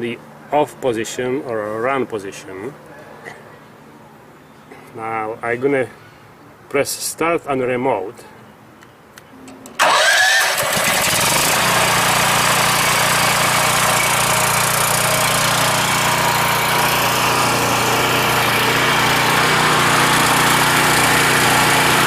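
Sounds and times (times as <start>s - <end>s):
generator engine running: 9.8s - 22.0s.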